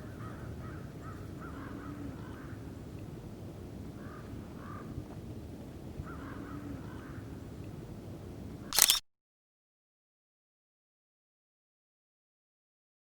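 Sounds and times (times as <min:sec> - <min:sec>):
wild birds harsh calls: 0:00.0 - 0:02.6
low outdoor background noise: 0:00.0 - 0:09.0.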